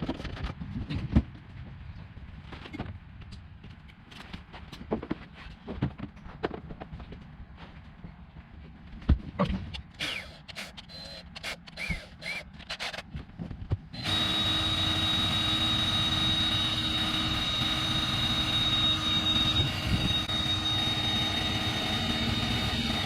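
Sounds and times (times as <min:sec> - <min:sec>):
power drill whining: 0:10.0 - 0:13.0, 0:14.0 - 0:23.0.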